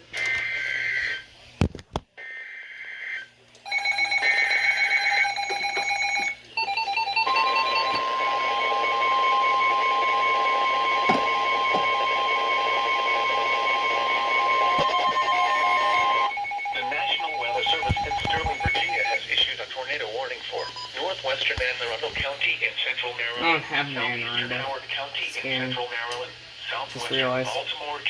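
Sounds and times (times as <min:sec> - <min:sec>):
steady warning alarm tone: 0:03.7 - 0:19.3
electronic alert beeping: 0:14.8 - 0:19.2.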